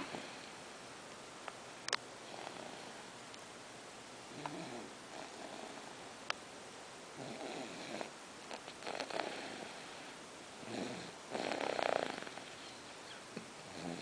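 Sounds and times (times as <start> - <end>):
person snoring softly: 0.0 - 0.5, 2.2 - 3.1, 4.3 - 5.9, 7.2 - 14.0.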